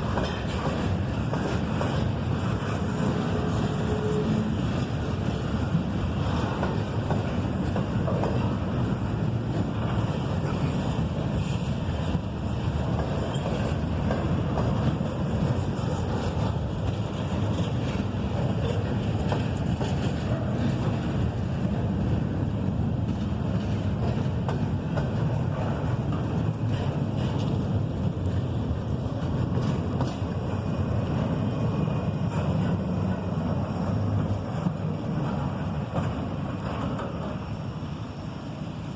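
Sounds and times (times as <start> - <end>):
freight train cars rolling past: 0.0 - 38.9.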